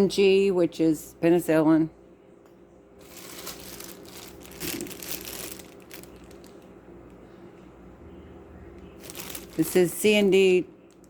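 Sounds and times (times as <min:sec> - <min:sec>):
packaging rustling and crinkling: 0:03.0 - 0:06.7, 0:09.0 - 0:10.0.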